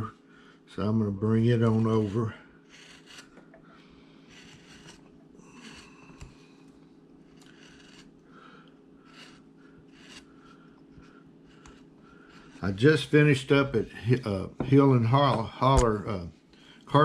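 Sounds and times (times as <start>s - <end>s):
steady low hum: 0.0s - 17.0s
chisel slicing into wood: 4.4s - 6.4s, 7.3s - 8.1s, 9.1s - 10.3s.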